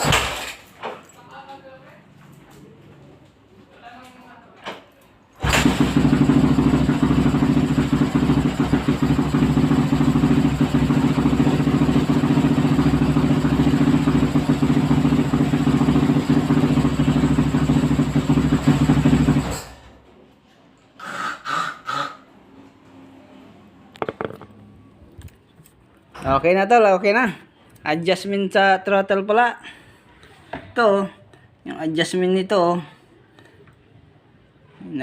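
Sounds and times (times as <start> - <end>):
motorcycle engine idling: 5.5 - 19.5.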